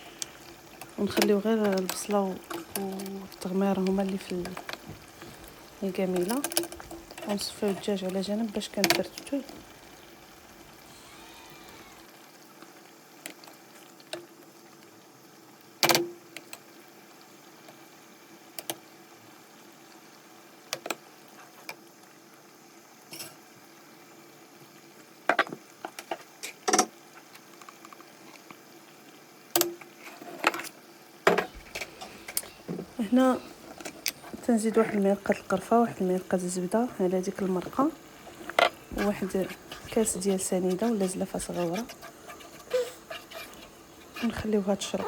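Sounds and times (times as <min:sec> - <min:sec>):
faint background hiss: 0:00.0 - 0:45.0
clinks of utensils and dishes: 0:23.1 - 0:23.4.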